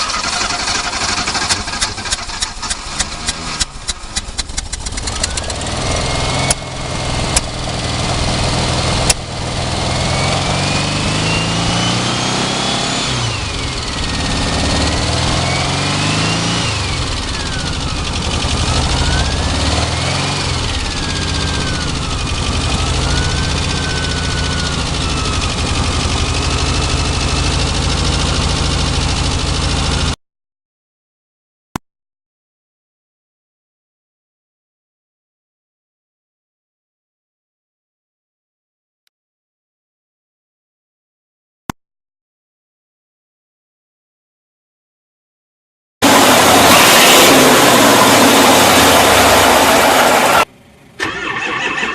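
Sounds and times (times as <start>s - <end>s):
big engine revving with whine: 0.1s - 30.2s, 46.0s - 51.9s.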